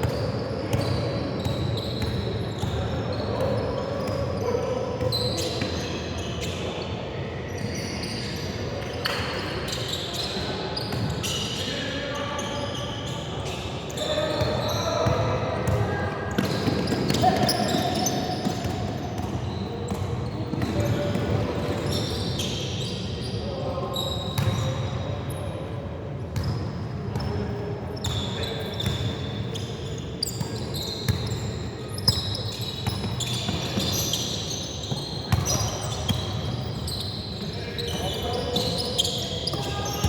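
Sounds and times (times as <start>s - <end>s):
ball bouncing on indoor court: 0.0s - 4.4s, 14.0s - 22.6s, 24.2s - 24.8s, 28.0s - 40.0s
murmur of voices: 0.0s - 40.0s.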